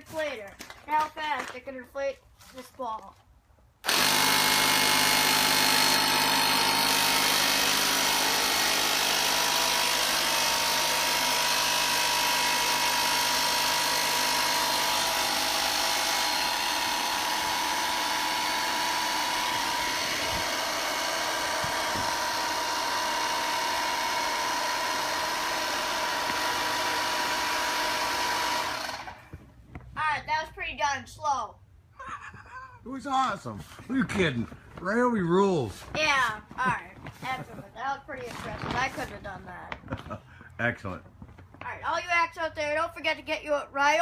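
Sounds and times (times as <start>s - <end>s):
inflator motor drone: 3.9s - 29.3s.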